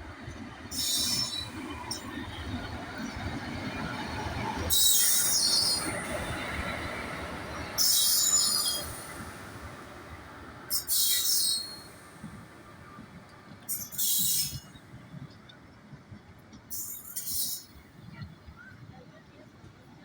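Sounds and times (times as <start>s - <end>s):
train wheels rumbling on track: 0.0s - 20.0s.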